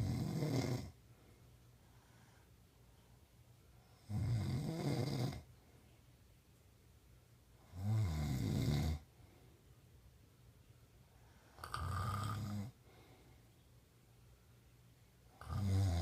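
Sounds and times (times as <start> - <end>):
man snoring: 0.0 - 1.0, 4.0 - 5.4, 7.7 - 9.0, 11.6 - 12.8, 15.4 - 16.0.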